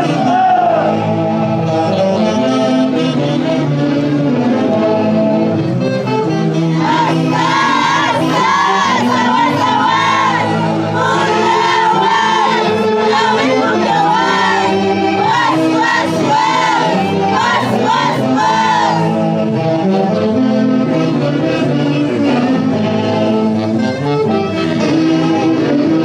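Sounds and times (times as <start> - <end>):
orchestra accompaniment: 0.0 - 26.0
group of voices singing: 6.5 - 23.8.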